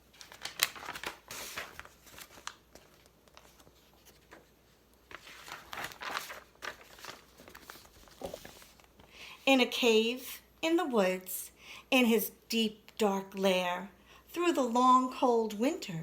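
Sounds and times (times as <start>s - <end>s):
picture book pages rustling: 0.0s - 9.4s.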